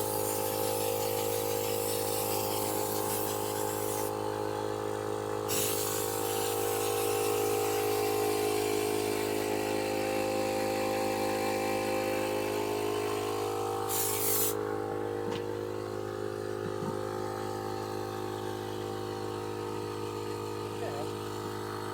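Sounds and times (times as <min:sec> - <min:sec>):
air-spray hiss: 0:00.0 - 0:04.2, 0:05.5 - 0:08.3, 0:13.9 - 0:14.6
compressor humming: 0:00.0 - 0:21.9.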